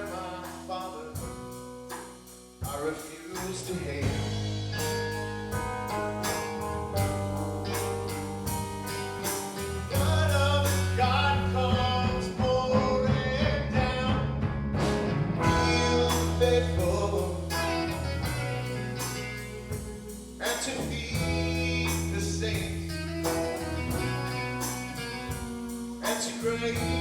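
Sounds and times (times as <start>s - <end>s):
blues-rock band playing: 0.0s - 27.0s
drum hits: 4.0s - 20.1s.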